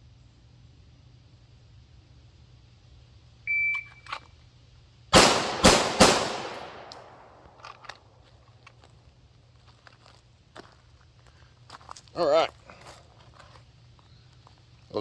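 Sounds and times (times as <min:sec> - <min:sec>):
pistol shots with echo: 0:05.1 - 0:07.4.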